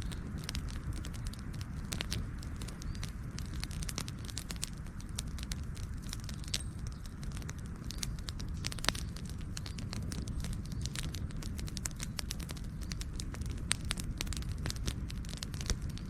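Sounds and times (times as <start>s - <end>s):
campfire crackling and popping: 0.0s - 16.0s
flames rumbling: 0.0s - 16.0s.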